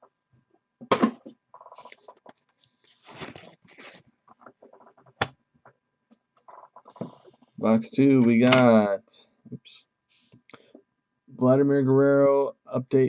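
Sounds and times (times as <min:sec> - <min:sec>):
plastic card holders rustling: 0:01.6 - 0:05.4.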